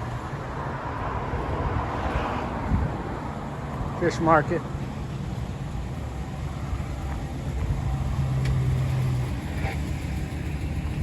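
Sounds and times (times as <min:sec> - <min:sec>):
motor vehicle engine rumble: 0:00.0 - 0:11.0.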